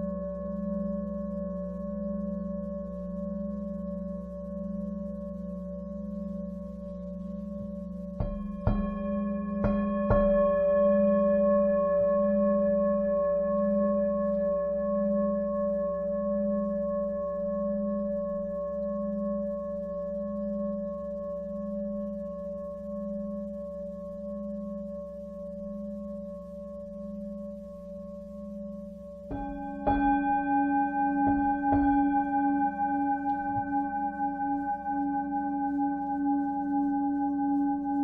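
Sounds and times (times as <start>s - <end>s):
singing bowl struck and ringing: 7.3s - 17.0s, 27.0s - 38.0s.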